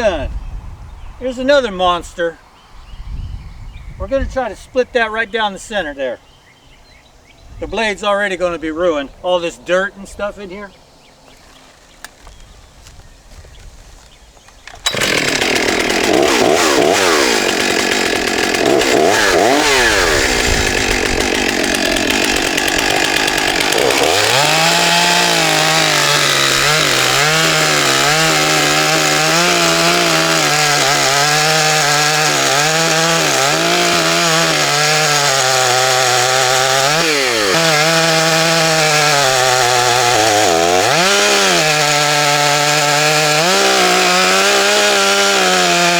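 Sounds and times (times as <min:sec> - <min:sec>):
chainsaw cutting log: 0:14.5 - 0:45.9.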